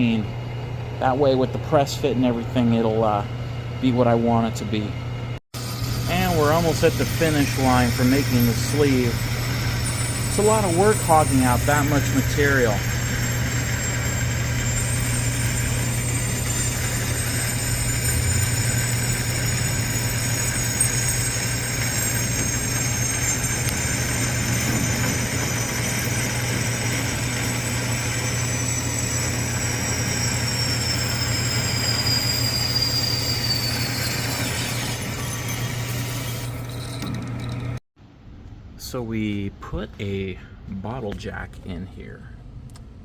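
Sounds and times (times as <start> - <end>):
lathe low hum: 0.0 - 37.8
high-pitched cutting whine: 5.6 - 37.6.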